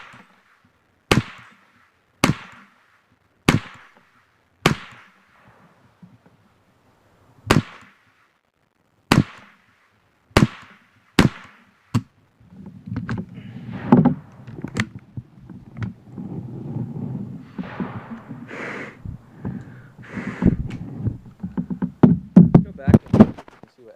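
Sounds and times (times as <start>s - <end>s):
gunshots: 0.0s - 0.5s, 1.1s - 5.6s, 7.5s - 8.2s, 9.1s - 12.0s, 13.4s - 14.4s, 17.5s - 19.0s
rustling and handling noise: 10.8s - 23.9s.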